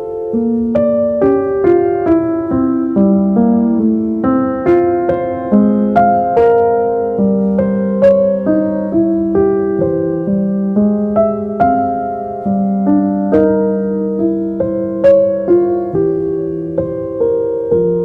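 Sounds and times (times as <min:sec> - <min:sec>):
gentle slow piano music: 0:00.0 - 0:18.0.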